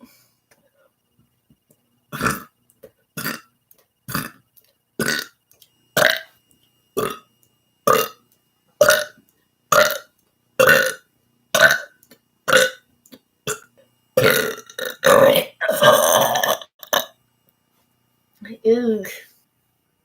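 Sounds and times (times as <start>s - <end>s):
person burping: 2.1s - 2.5s, 3.2s - 3.5s, 4.1s - 4.4s, 5.0s - 5.3s, 6.0s - 6.3s, 7.0s - 7.2s, 7.9s - 8.2s, 8.8s - 11.0s, 11.6s - 11.9s, 12.5s - 12.8s, 13.5s - 17.2s.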